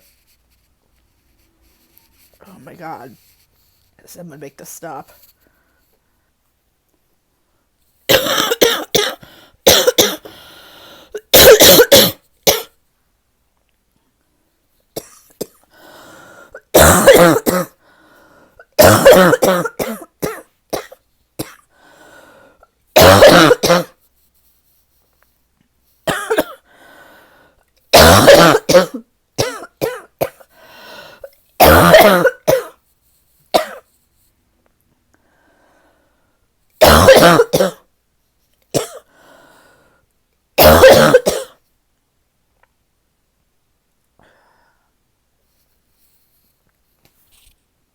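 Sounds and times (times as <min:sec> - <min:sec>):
person coughing harshly: 0:08.1 - 0:10.4, 0:11.1 - 0:12.8, 0:15.0 - 0:15.6, 0:16.5 - 0:17.8, 0:18.8 - 0:21.7, 0:23.0 - 0:24.0, 0:26.1 - 0:26.6, 0:27.9 - 0:30.5, 0:31.6 - 0:32.8, 0:33.5 - 0:33.9, 0:36.8 - 0:37.9, 0:38.8 - 0:39.1, 0:40.6 - 0:41.6
faint breaths: 0:09.2 - 0:09.6, 0:10.2 - 0:11.2, 0:15.7 - 0:16.6, 0:17.8 - 0:18.6, 0:21.7 - 0:22.7, 0:26.6 - 0:27.7, 0:30.5 - 0:31.4, 0:35.1 - 0:36.5, 0:39.1 - 0:40.1, 0:44.2 - 0:45.0.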